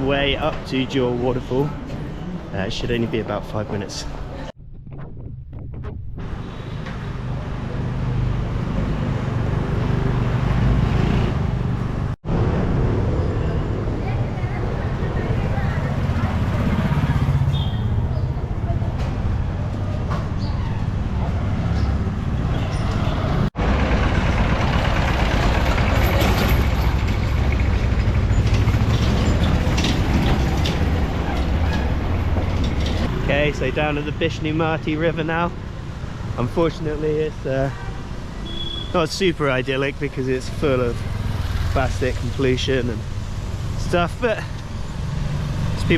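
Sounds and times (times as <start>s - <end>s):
street traffic: 0.0s - 4.6s, 6.0s - 45.9s
vehicle passing close: 40.6s - 45.9s.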